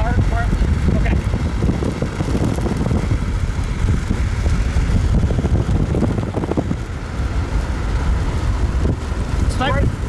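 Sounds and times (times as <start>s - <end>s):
car road and engine rumble: 0.0s - 10.0s
wind buffeting microphone: 0.0s - 10.0s.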